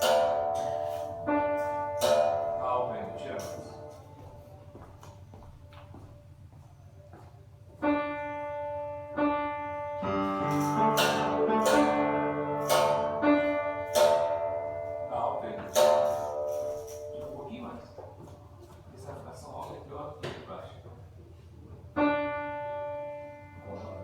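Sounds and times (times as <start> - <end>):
sharp bright percussive hits: 0.0 - 4.0, 10.3 - 17.5
piano sustained chords: 0.0 - 5.3, 7.7 - 18.5, 21.9 - 24.0.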